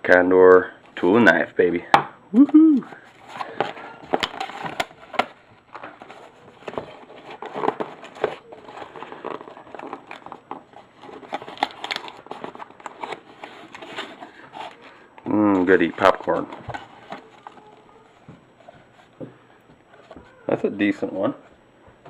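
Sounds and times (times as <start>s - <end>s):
box being opened: 2.8s - 19.2s
packing material crinkling: 2.9s - 19.1s.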